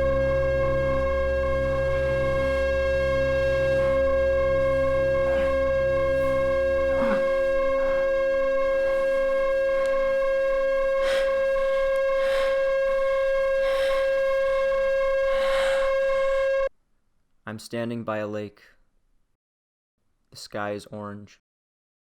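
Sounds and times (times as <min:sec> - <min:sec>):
ambient held tone: 0:00.0 - 0:16.7
deep low drone: 0:00.0 - 0:16.7
soft swelling notes: 0:00.0 - 0:16.7.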